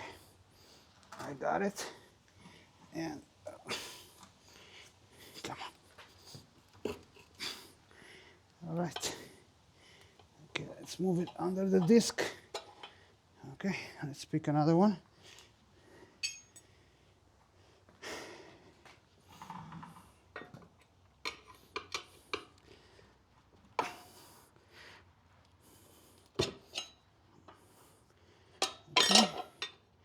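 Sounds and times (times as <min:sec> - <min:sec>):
tire levers clinking on rim: 0:16.2 - 0:16.6, 0:28.6 - 0:29.8.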